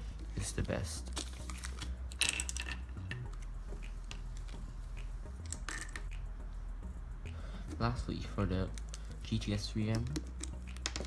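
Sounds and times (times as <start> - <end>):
low steady hum: 0.0 - 11.0
plastic cube clicks and taps: 5.4 - 6.2, 8.7 - 9.2, 9.9 - 11.0.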